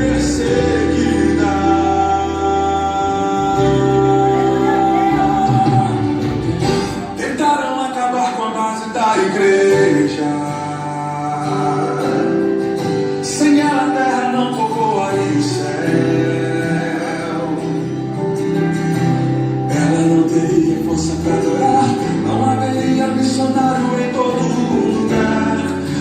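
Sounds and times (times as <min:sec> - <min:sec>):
bass line: 0:00.0 - 0:07.6
guitar: 0:00.0 - 0:26.0
man singing gospel song: 0:00.0 - 0:26.0.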